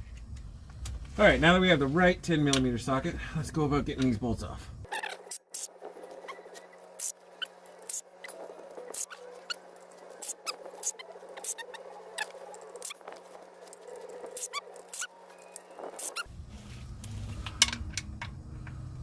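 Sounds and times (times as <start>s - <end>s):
small squeaks: 4.9s - 16.3s.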